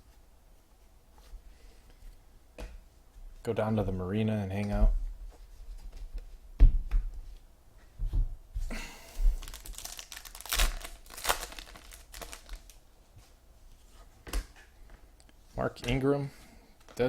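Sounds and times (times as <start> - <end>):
wrappers tearing and crinkling: 9.3 - 12.8.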